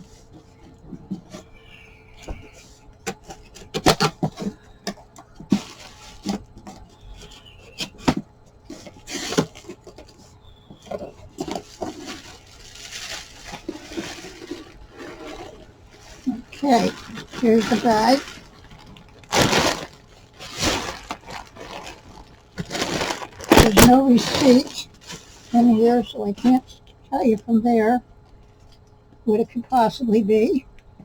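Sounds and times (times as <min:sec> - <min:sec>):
packing tape tearing: 0:16.2 - 0:25.7.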